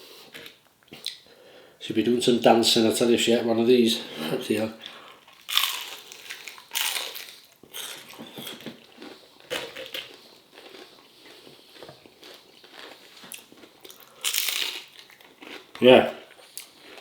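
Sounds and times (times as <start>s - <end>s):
person chewing chicken wings: 4.9s - 17.0s.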